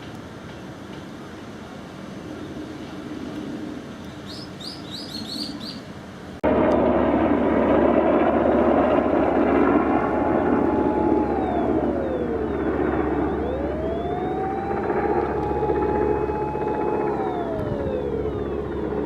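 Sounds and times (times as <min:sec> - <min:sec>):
low outdoor hum: 0:00.0 - 0:19.0
birds chirping: 0:04.1 - 0:05.9
electronic siren: 0:07.8 - 0:19.0.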